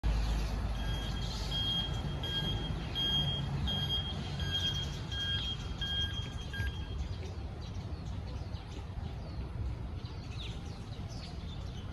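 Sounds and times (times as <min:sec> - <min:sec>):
truck engine rumbling: 0:00.0 - 0:08.0
reversing alarm beeping: 0:00.8 - 0:07.0.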